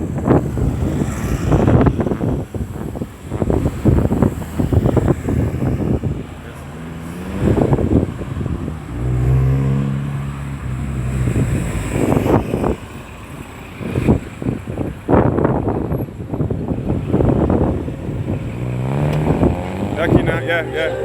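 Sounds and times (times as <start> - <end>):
wind buffeting microphone: 0.0 - 6.4, 7.3 - 9.2, 13.7 - 20.6
road traffic passing: 0.0 - 21.0
vehicle engine droning low: 16.9 - 21.0.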